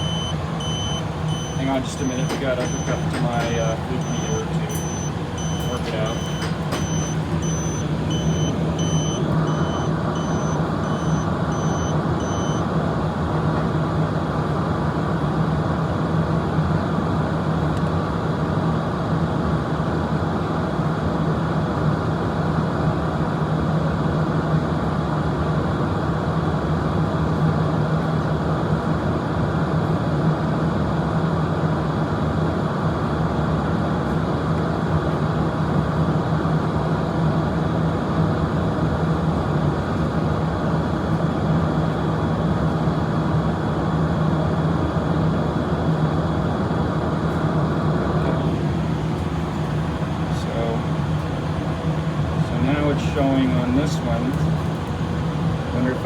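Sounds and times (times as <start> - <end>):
machinery droning: 0.0 - 12.4, 47.9 - 56.0
continuity tester beeping: 0.0 - 12.7, 48.4 - 56.0.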